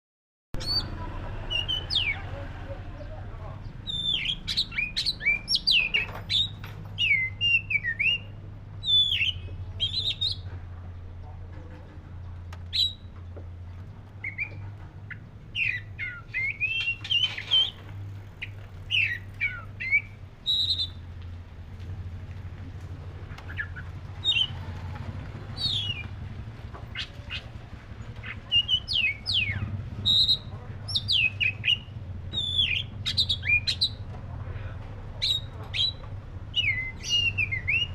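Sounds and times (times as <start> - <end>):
bird singing whistled notes: 3.8 - 10.5, 12.7 - 13.1, 14.2 - 17.8, 18.4 - 21.1, 23.5 - 24.6, 25.6 - 26.1, 28.2 - 34.0, 35.2 - 37.9.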